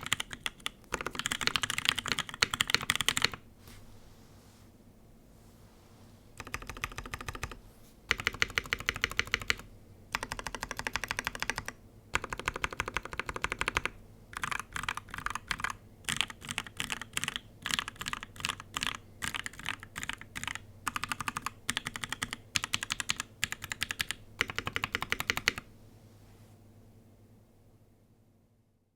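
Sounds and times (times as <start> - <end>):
mechanical keyboard typing: 0.0 - 3.4, 6.4 - 25.7.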